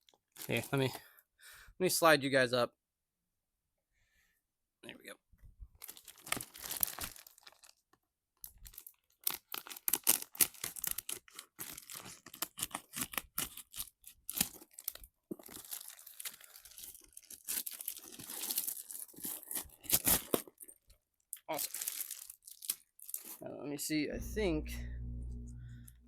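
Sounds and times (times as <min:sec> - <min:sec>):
packaging crinkling and tearing: 0:05.8 - 0:23.4.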